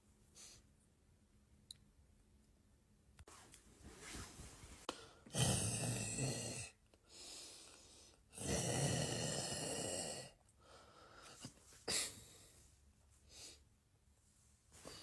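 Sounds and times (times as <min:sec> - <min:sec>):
person snoring: 0:05.3 - 0:06.8, 0:08.3 - 0:10.4.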